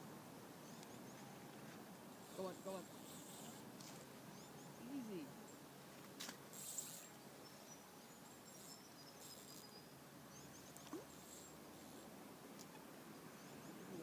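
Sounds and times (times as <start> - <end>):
soft hiss: 0.0 - 14.0.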